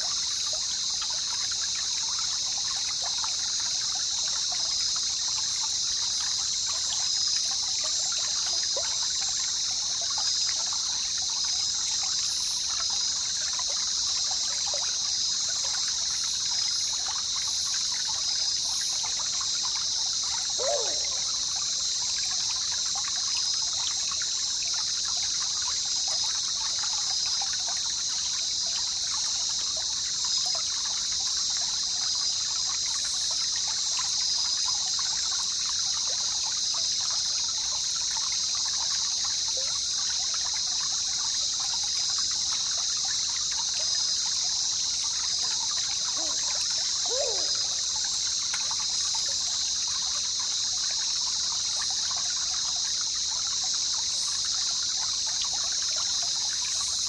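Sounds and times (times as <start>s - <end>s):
water trickling and babbling: 0.0s - 57.0s
short falling call: 47.1s - 47.7s.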